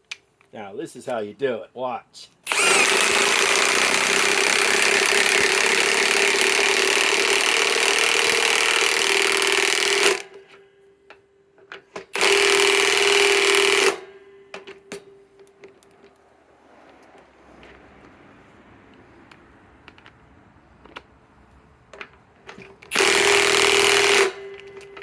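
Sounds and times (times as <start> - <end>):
impact wrench hammering screw into wood: 2.5 - 10.6, 12.0 - 15.0, 22.9 - 25.0.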